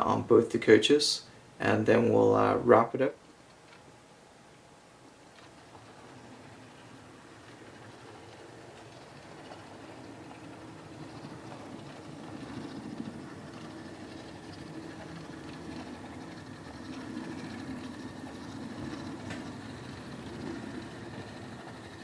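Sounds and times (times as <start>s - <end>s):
model train motor running: 5.4s - 22.0s.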